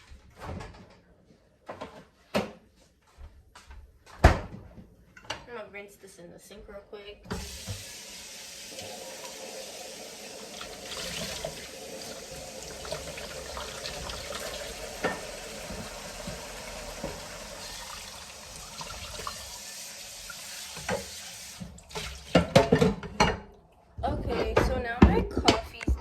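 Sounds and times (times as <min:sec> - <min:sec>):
tap running into sink: 0:07.3 - 0:23.4
dish knocking against sink: 0:14.9 - 0:17.8, 0:22.0 - 0:23.4
dish clatters: 0:22.0 - 0:23.5.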